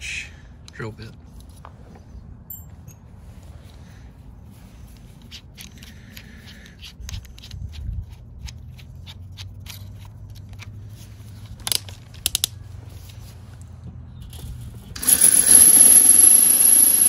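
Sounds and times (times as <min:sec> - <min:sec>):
drill chuck clicking and rattling: 0:15.0 - 0:17.0.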